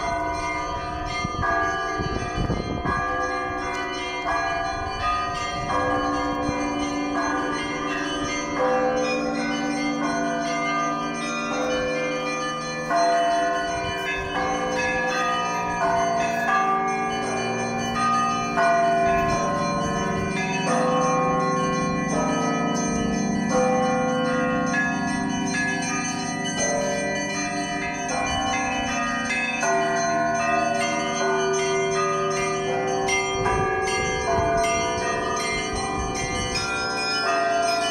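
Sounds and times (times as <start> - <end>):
church bells ringing: 0.0 - 37.9
deep bell ringing: 0.0 - 37.9.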